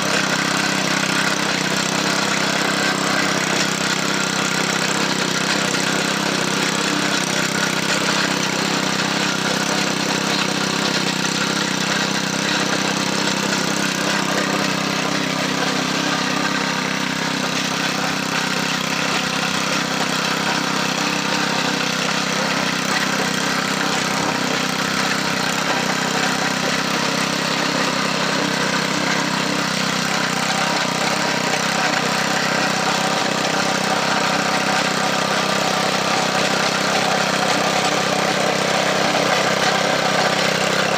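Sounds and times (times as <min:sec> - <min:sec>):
tiller engine droning: 0:00.0 - 0:40.9.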